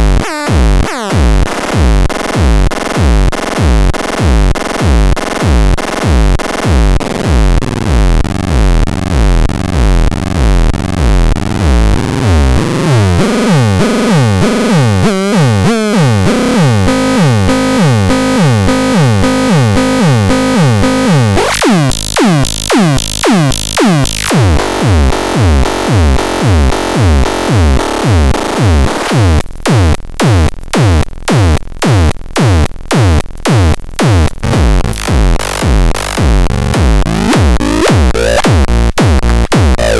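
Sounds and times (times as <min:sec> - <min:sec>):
electronic kick beat: 0:00.0 - 0:39.9
repeating synthesizer tones: 0:13.2 - 0:29.4, 0:32.5 - 0:39.9.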